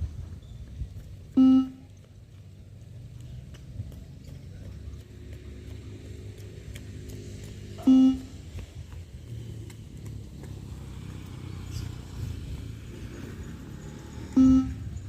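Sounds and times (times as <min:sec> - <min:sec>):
short electronic beep: 0:01.4 - 0:01.8, 0:07.8 - 0:08.4, 0:14.4 - 0:14.9.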